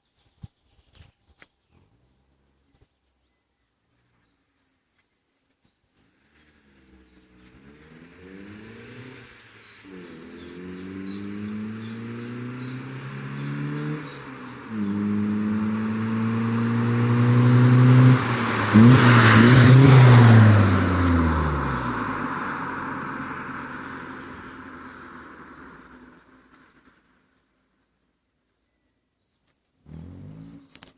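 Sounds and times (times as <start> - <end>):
car accelerating through gears: 6.4 - 26.2, 29.8 - 30.8.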